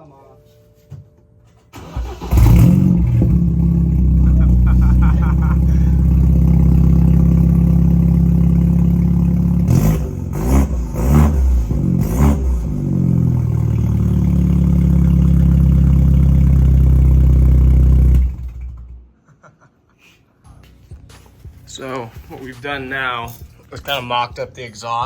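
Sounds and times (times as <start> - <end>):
car engine idling and revving: 1.8 - 19.1.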